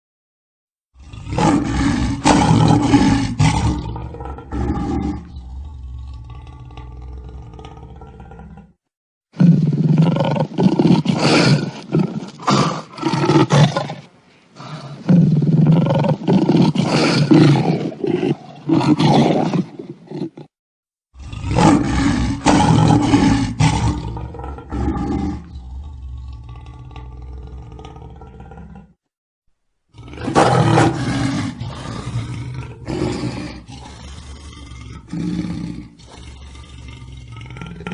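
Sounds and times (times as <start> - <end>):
lion roaring: 0.9 - 8.8, 21.2 - 29.0, 29.9 - 37.9.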